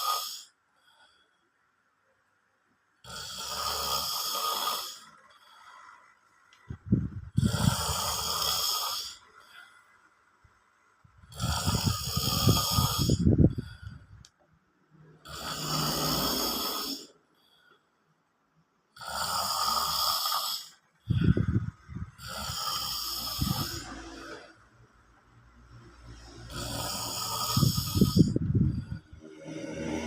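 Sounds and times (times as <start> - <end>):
man snoring loudly: 0.0 - 0.5, 3.0 - 5.2, 7.3 - 9.6, 11.2 - 13.8, 15.2 - 17.2, 19.0 - 21.5, 22.1 - 24.6, 26.1 - 30.0.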